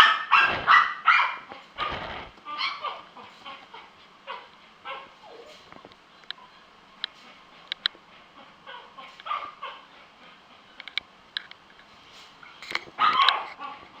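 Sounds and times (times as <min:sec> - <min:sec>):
puppy yipping and whimpering: 0:00.0 - 0:03.0, 0:04.3 - 0:05.7.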